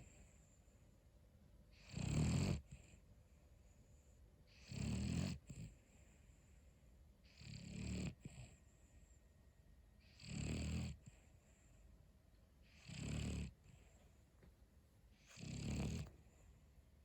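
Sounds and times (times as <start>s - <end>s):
dog snoring: 1.7s - 3.0s, 4.5s - 6.1s, 7.2s - 8.7s, 10.0s - 11.7s, 12.6s - 14.0s, 15.2s - 16.4s.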